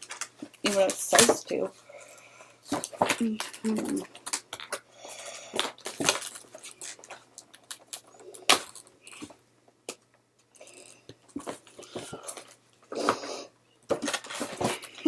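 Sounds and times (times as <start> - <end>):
toy packaging being handled: 0.0 - 1.7, 2.7 - 9.4, 13.9 - 15.0.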